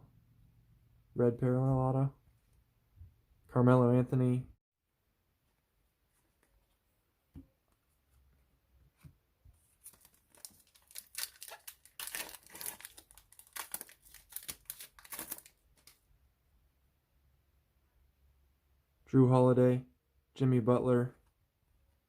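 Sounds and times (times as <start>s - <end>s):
wrapper crinkling and tearing: 9.8s - 16.0s.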